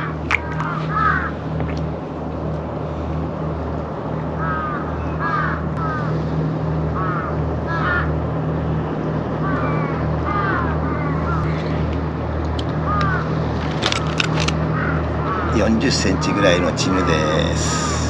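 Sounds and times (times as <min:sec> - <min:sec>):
birds calling harshly: 0:00.0 - 0:01.4, 0:04.4 - 0:06.2, 0:06.9 - 0:08.2, 0:09.4 - 0:11.9, 0:12.7 - 0:18.0
low engine hum: 0:00.0 - 0:18.0.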